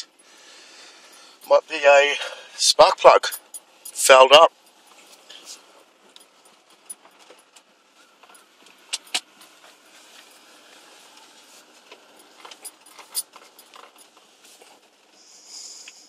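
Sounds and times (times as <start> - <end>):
light metallic clicks and rattles: 3.1 - 14.8.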